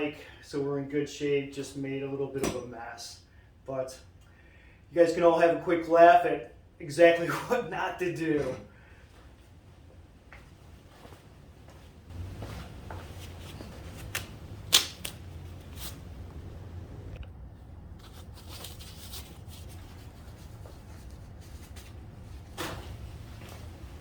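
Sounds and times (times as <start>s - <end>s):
steady low hum: 6.6s - 24.0s.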